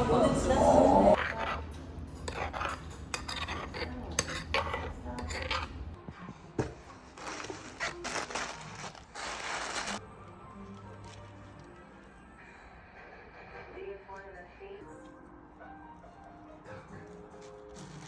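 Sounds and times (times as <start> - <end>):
cutlery and dishes clinking: 1.2 - 5.9.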